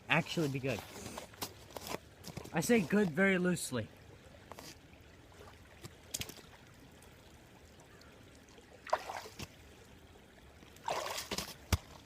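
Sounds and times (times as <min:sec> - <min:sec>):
creek water trickling: 0:00.0 - 0:12.0
short knocks or splashes: 0:10.8 - 0:12.0.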